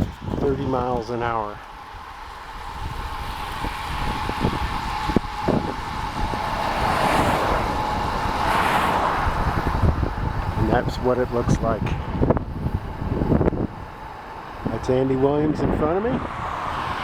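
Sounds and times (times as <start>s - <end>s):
high hum: 0.0s - 17.0s
wind buffeting microphone: 0.0s - 17.0s.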